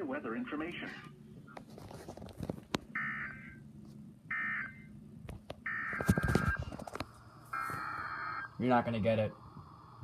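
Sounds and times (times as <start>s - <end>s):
buzzy data tone bursts: 7.2s - 10.0s.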